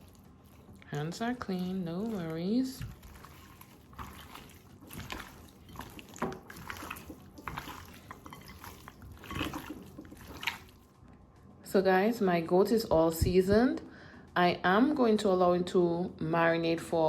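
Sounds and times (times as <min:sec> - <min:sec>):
hands squelching wet meat: 0:00.0 - 0:10.9.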